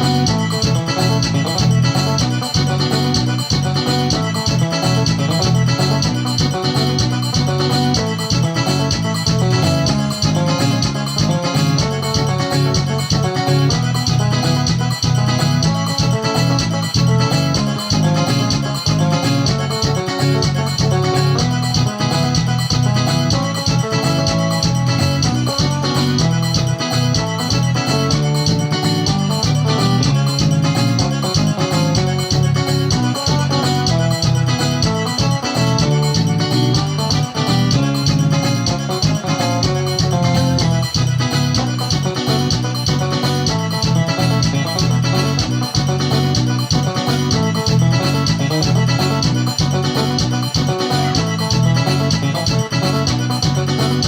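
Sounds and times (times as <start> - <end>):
electronic keyboard chords: 0.0 - 54.0
song with steady beat: 0.0 - 54.0.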